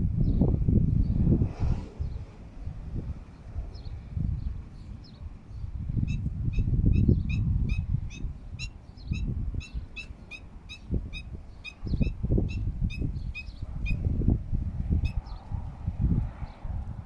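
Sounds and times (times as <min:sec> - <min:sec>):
low rumbling noise: 0:00.0 - 0:04.8.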